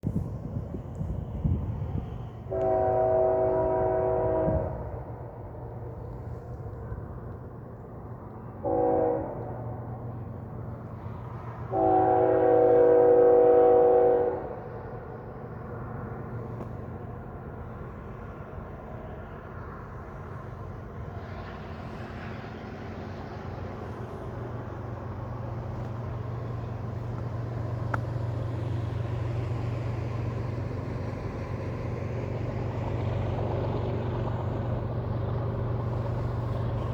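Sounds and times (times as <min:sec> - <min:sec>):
locomotive low rumble: 0:00.0 - 0:36.9
wheels hissing on rail: 0:00.0 - 0:36.9
locomotive air horn blasts: 0:02.5 - 0:05.1, 0:08.6 - 0:09.8, 0:11.7 - 0:14.8.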